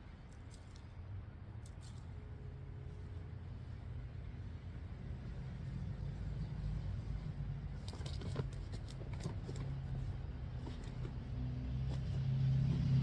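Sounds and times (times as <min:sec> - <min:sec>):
low engine-like hum: 0:00.0 - 0:13.0
light clicks and rustles: 0:00.2 - 0:01.0, 0:01.6 - 0:02.2, 0:07.8 - 0:13.0.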